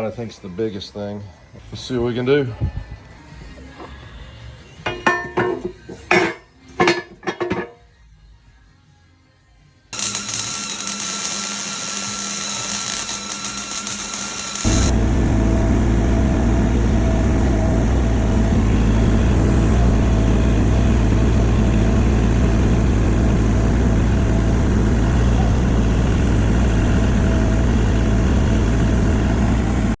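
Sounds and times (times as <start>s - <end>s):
mini excavator engine running: 10.0s - 30.0s.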